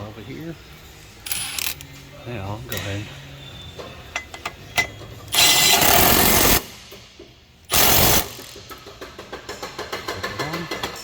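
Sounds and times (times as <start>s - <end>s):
power wrench running bolt: 1.2s - 1.9s, 4.4s - 6.7s, 7.7s - 8.8s.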